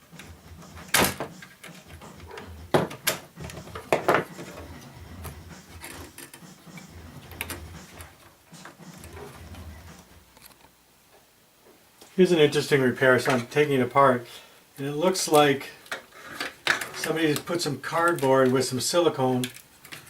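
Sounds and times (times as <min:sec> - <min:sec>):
clicks and knocks of parts: 0:00.9 - 0:04.6, 0:05.2 - 0:09.2, 0:15.3 - 0:18.6, 0:19.4 - 0:20.0.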